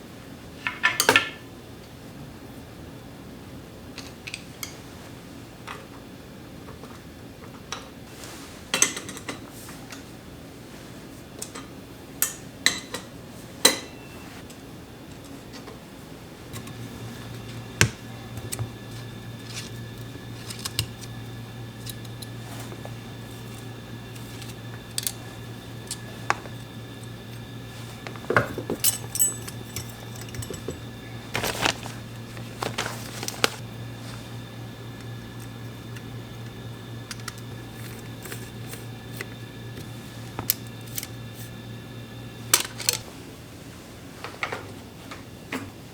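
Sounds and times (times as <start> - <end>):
low steady hum: 16.3 - 43.1
metal tools clinking: 17.4 - 33.6.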